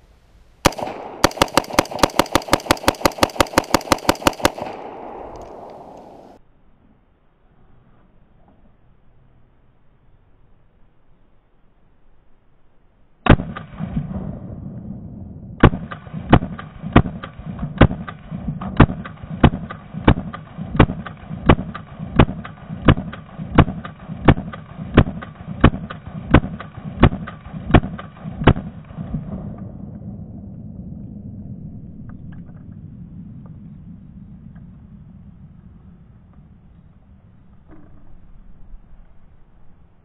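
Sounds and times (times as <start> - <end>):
rifle shots with ringing echo: 0.6 - 6.4, 13.2 - 14.8, 15.6 - 29.9.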